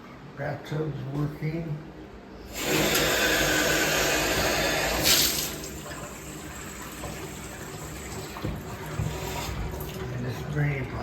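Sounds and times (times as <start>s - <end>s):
water pouring into bathtub: 2.5s - 11.0s.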